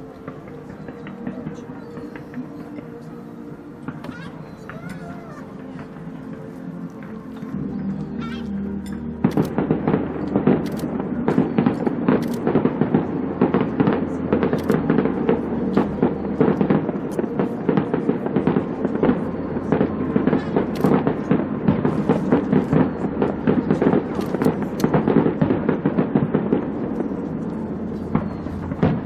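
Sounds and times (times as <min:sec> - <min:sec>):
fireworks bangs and crackles: 0:00.0 - 0:29.0.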